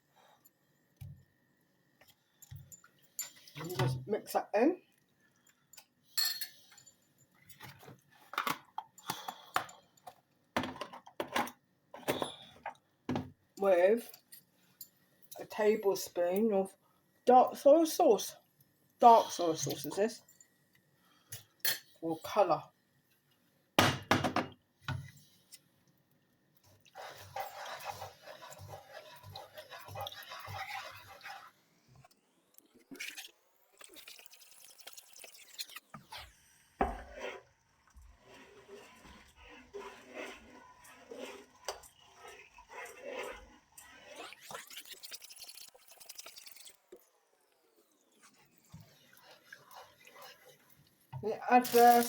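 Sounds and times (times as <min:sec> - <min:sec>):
utensil scraping a pan: 0:26.9 - 0:31.6, 0:35.7 - 0:45.2
sizzling in hot oil: 0:33.0 - 0:36.2, 0:36.8 - 0:47.0.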